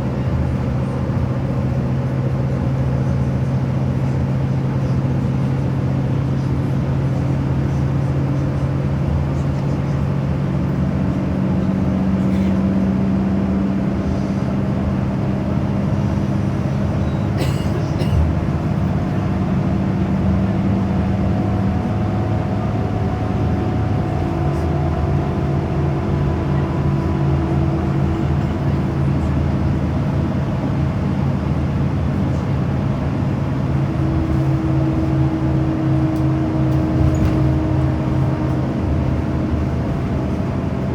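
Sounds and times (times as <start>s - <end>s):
road noise: 0.0s - 40.9s
vehicle engine hum: 0.0s - 40.9s.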